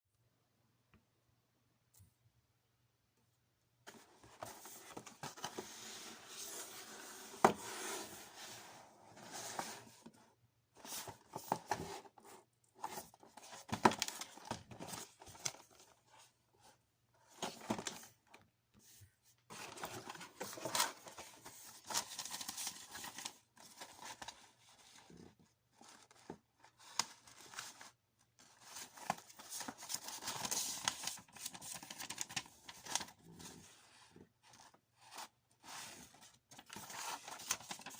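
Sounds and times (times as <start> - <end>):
wrapping rustling and crinkling: 19.5 - 37.9.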